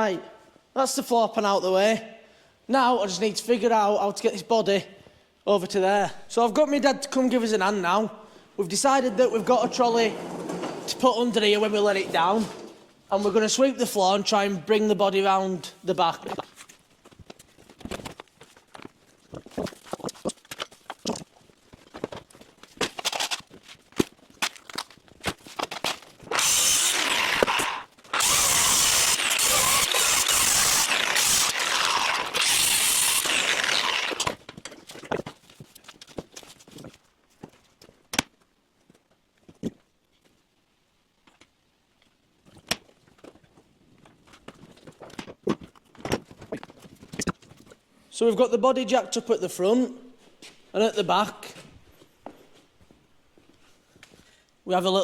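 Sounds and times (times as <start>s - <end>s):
footsteps: 9.6s - 13.0s
knocks and clatters of handling: 16.2s - 26.3s, 34.3s - 40.4s, 41.2s - 47.8s
hissing machine noise: 26.3s - 34.3s.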